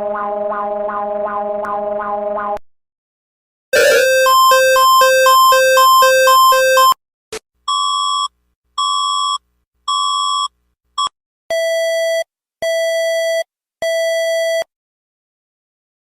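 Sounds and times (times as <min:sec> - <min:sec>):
electronic alert beeps: 0:03.8 - 0:07.0.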